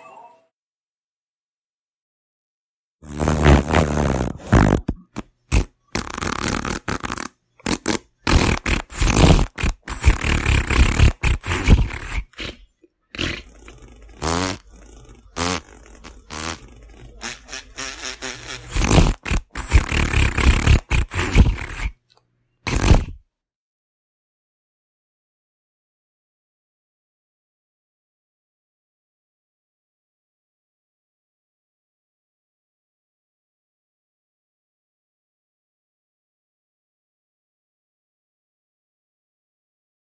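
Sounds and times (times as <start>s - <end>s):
comic fart sounds: 3.0s - 22.0s, 22.7s - 23.2s.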